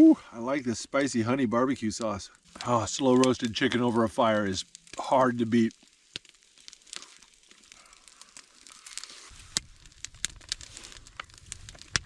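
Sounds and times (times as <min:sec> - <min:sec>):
faint crinkling and crackling: 0:00.6 - 0:12.0
food being chewed: 0:05.8 - 0:12.0.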